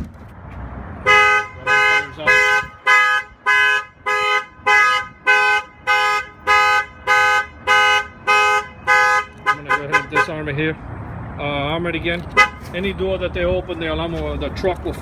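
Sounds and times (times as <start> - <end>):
truck alarm blasts: 1.1 - 10.3.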